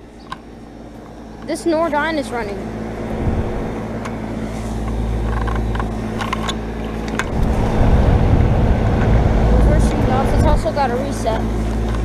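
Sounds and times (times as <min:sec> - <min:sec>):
compressor hum: 0:00.0 - 0:12.0
fan noise: 0:00.0 - 0:12.0
low rumble: 0:02.5 - 0:12.0.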